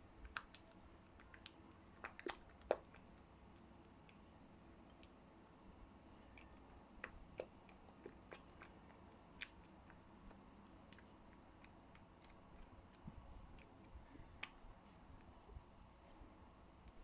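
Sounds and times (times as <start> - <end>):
faint clicks: 0.2 - 5.2, 6.0 - 14.6
soft high chirp: 1.2 - 2.0, 4.1 - 4.5, 5.9 - 6.7, 8.2 - 9.0, 10.6 - 11.4, 12.9 - 14.3, 15.2 - 15.7.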